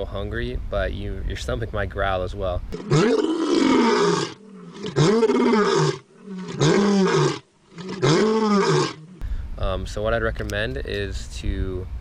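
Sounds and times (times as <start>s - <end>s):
big cat roaring: 2.8s - 9.2s.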